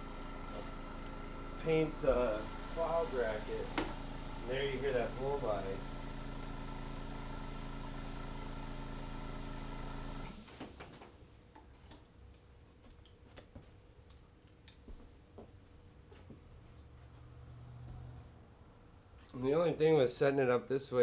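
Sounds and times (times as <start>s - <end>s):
airbrush compressor humming: 0.0s - 10.4s.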